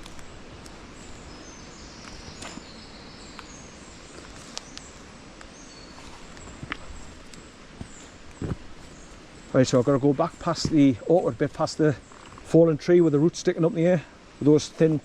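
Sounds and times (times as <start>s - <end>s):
footsteps on stones: 2.0s - 2.7s, 5.9s - 12.5s.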